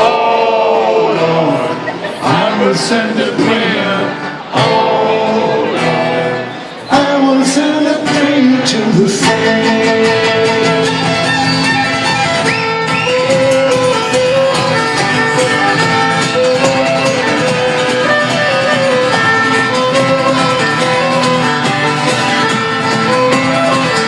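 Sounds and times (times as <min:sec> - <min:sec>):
strummed acoustic guitar: 0:00.0 - 0:24.0
fiddle melody: 0:09.5 - 0:24.0.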